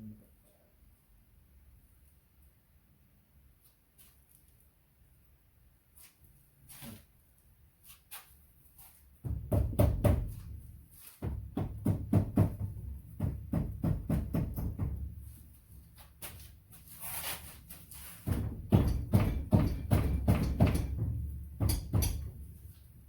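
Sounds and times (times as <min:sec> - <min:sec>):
knocks on metal engine parts: 0:09.2 - 0:10.5, 0:11.2 - 0:15.2, 0:18.3 - 0:22.5.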